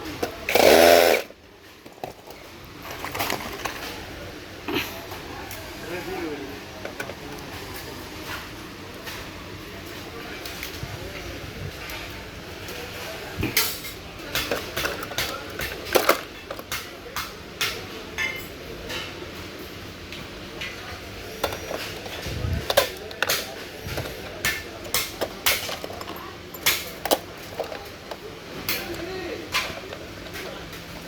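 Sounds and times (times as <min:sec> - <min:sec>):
metal parts and tools clinking: 0:01.8 - 0:04.0, 0:18.2 - 0:19.1, 0:21.4 - 0:31.0.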